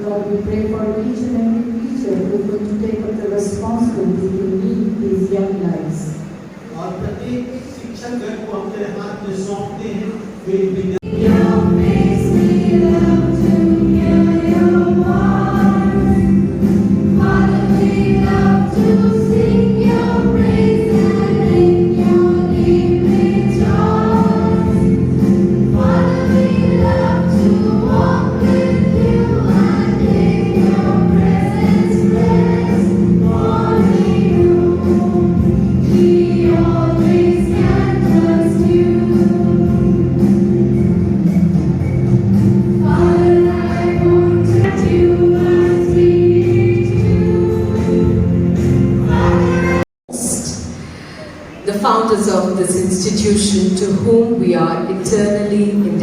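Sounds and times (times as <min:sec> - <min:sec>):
gospel choir singing: 0:10.9 - 0:50.4.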